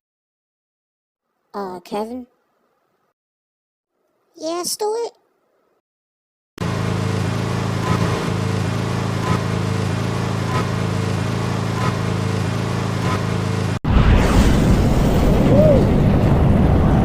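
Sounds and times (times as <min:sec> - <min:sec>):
cartoon rocket engine rumble: 0:06.6 - 0:17.0.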